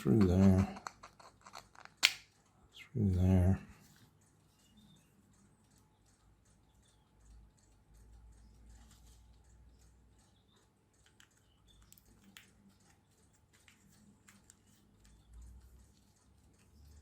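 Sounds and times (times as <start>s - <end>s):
small metal parts clicking: 0.0s - 2.2s.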